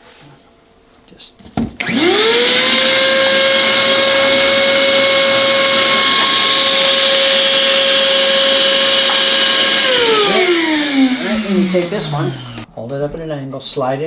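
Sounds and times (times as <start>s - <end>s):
chop saw motor whine: 1.8s - 12.7s.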